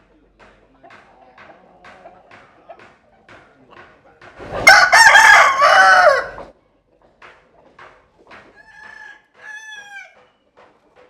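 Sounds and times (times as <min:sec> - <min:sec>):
soft clucks: 0:00.4 - 0:04.6
rooster crowing: 0:04.6 - 0:06.5, 0:08.6 - 0:10.2.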